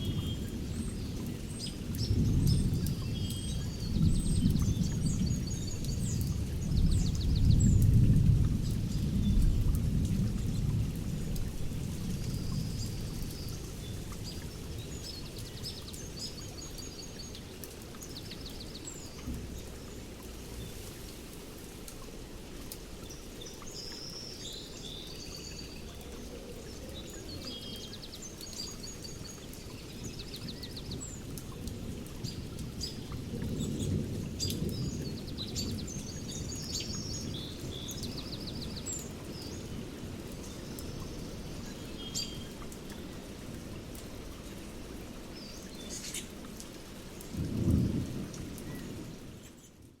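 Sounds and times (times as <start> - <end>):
songbirds chirping: 0.0 - 50.0
steady rain: 0.0 - 50.0
thunder rumbling: 47.3 - 49.4.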